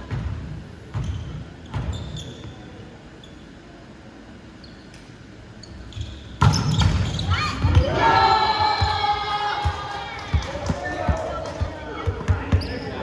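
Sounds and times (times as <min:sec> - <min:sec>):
short high squeaks: 0:04.6 - 0:07.4.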